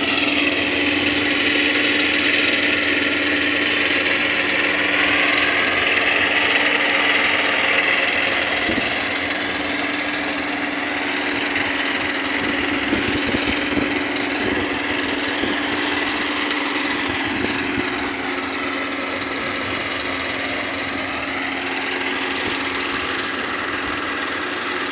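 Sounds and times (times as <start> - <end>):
small engine running: 0.0 - 24.9.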